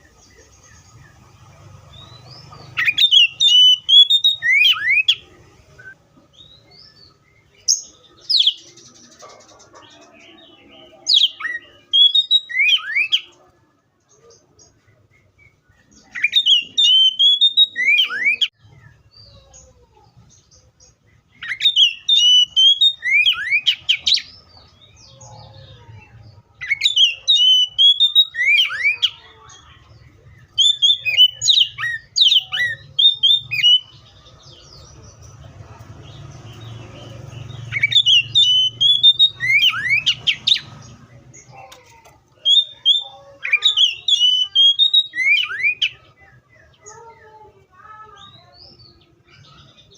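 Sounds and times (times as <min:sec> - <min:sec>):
bird singing whistled phrases: 0:02.8 - 0:05.2, 0:11.1 - 0:13.3, 0:15.4 - 0:19.0, 0:21.4 - 0:24.4, 0:26.6 - 0:29.2, 0:30.4 - 0:34.0, 0:37.7 - 0:40.7, 0:42.4 - 0:46.1.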